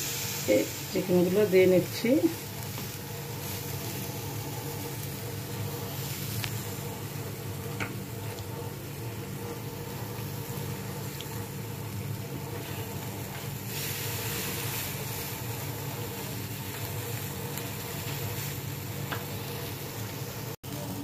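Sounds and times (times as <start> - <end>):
chicken sizzling in a pan: 0.0 - 21.0
steady low hum: 0.0 - 21.0.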